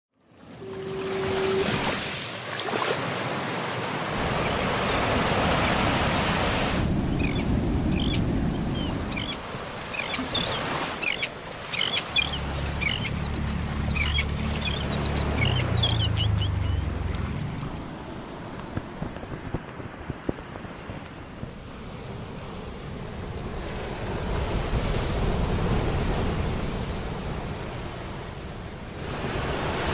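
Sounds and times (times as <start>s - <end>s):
ocean waves breaking on shore: 0.2s - 29.9s
bird chirps: 10.0s - 17.0s.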